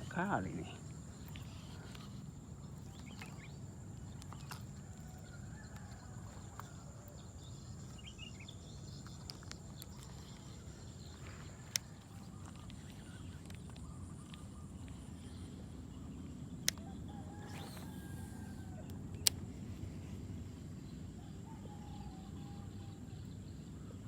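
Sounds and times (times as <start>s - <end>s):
faint clicks: 0.8s - 15.6s, 16.6s - 19.9s.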